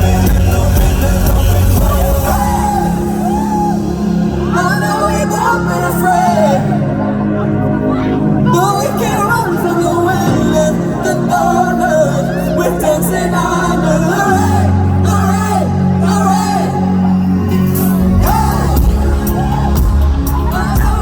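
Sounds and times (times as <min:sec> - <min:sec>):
live pop band playing: 0:00.0 - 0:21.0
person singing melody: 0:00.0 - 0:21.0
audience shouts: 0:02.0 - 0:04.3.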